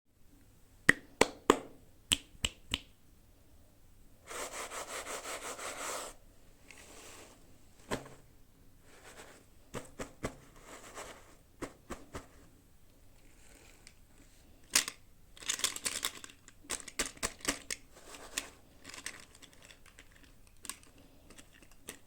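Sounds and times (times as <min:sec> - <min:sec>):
plastic packaging clicks: 0:14.7 - 0:17.8.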